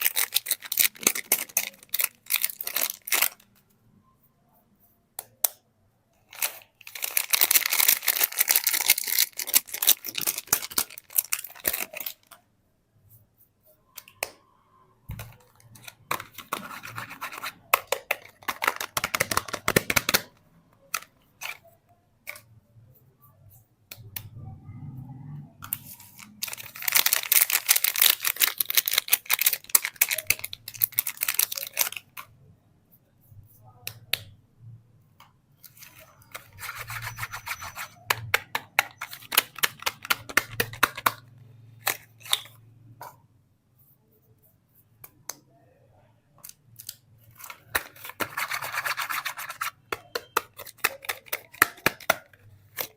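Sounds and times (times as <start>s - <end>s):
wrapper crinkling and tearing: 0.0s - 3.5s, 6.3s - 12.3s, 25.8s - 32.2s.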